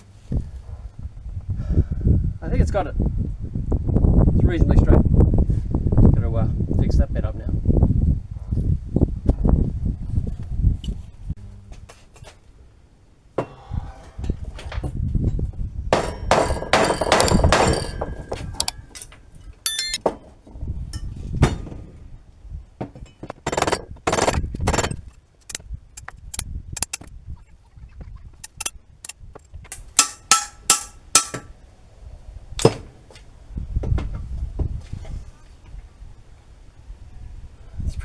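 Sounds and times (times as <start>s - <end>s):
hammer striking steel: 19.7s - 20.0s, 26.0s - 27.1s, 28.4s - 28.7s, 30.0s - 31.5s.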